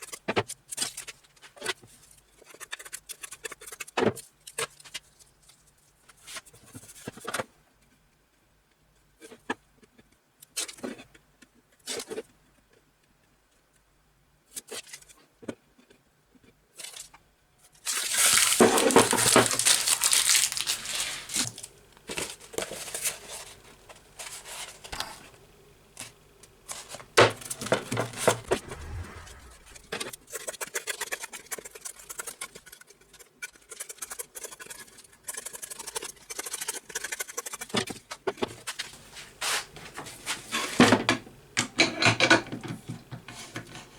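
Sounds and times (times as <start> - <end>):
crackly handling noise: 14.6 - 25.4
tape clicks and rustles: 17.8 - 23.3
tape tearing: 17.9 - 21.7.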